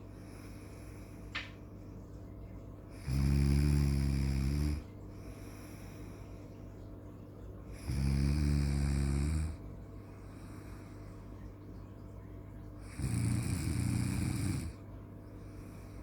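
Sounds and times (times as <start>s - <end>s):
rattling snores: 3.0s - 4.8s, 7.8s - 9.6s, 12.9s - 14.8s.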